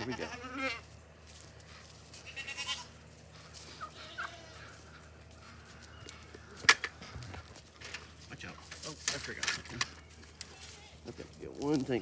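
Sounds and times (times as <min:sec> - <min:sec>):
poultry calling: 0:00.0 - 0:00.9, 0:01.6 - 0:08.3.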